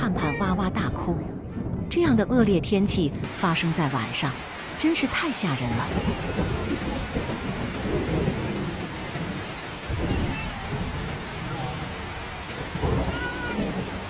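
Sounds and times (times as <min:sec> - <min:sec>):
thunder rumbling: 0:00.0 - 0:14.0
heavy rain pouring: 0:02.8 - 0:14.0.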